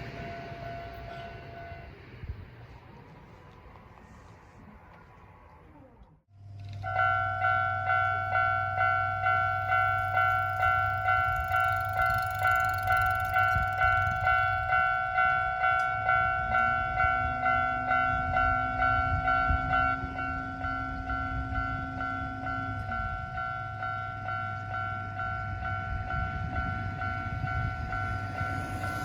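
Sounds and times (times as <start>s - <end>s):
level crossing bell ringing: 6.9s - 29.0s.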